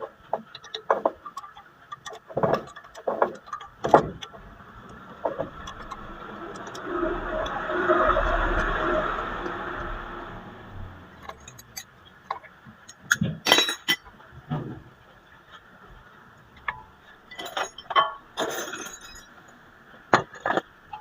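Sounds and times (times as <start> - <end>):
metal tools clinking: 12.9 - 14.1, 16.7 - 19.4.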